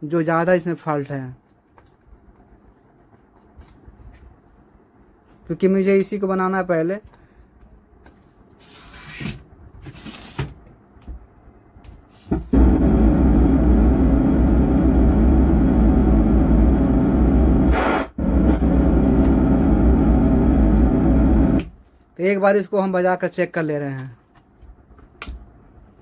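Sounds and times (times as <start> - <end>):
distorted loudspeaker sound: 12.3 - 21.6.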